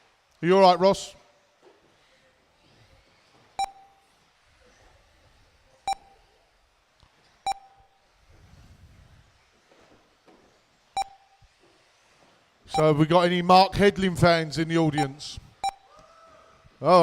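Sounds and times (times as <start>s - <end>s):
short high electronic beeps: 3.6s - 4.0s, 5.9s - 6.2s, 7.4s - 7.9s, 11.0s - 11.4s, 15.0s - 15.9s.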